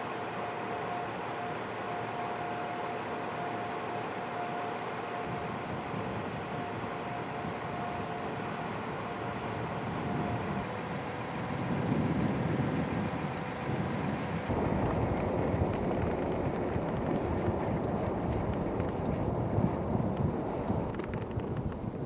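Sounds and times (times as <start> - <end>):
vehicle engine and road rumble: 0.0 - 22.0
wind on microphone: 5.0 - 22.0.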